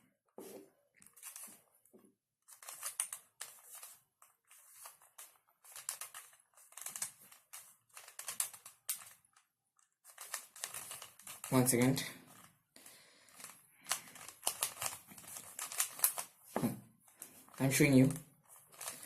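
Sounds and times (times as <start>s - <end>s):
puzzle cube clicking and scraping: 1.0s - 1.6s, 2.5s - 12.6s, 13.2s - 19.0s.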